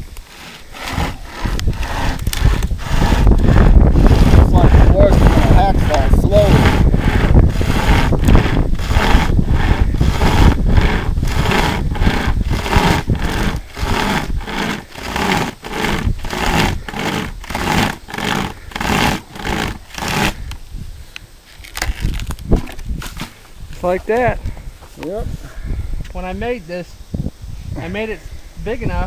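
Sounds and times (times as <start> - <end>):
chain saw rasping through wood: 0.0 - 20.6
wind on microphone: 0.0 - 29.0.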